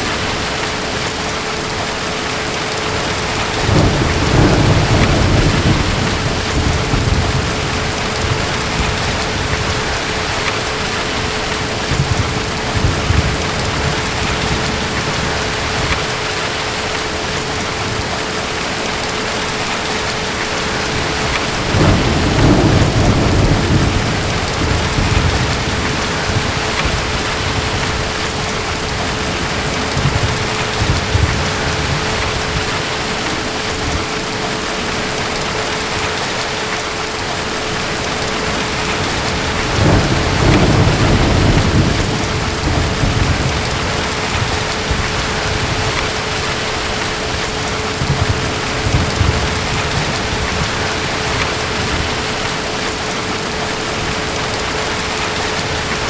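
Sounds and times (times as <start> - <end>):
distant thunder rumbling: 0.0 - 18.2, 19.9 - 35.2, 37.5 - 56.0
steady rain falling: 0.0 - 56.0.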